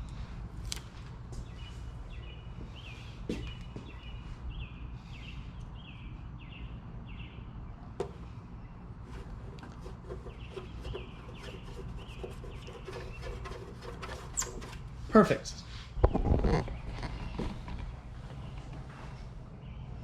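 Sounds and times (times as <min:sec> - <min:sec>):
steady low hum: 0:00.0 - 0:20.0
bird calling: 0:09.2 - 0:14.8.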